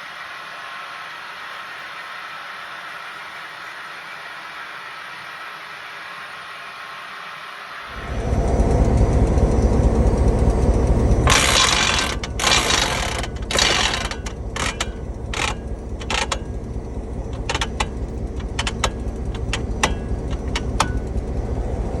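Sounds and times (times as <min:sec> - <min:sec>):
model train rumbling: 0:07.7 - 0:22.0
sharp irregular clicks: 0:07.9 - 0:21.7.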